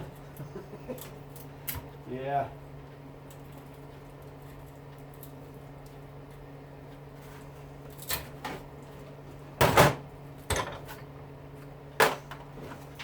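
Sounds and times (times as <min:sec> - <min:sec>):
tools clattering on workbench: 0:09.6 - 0:11.1.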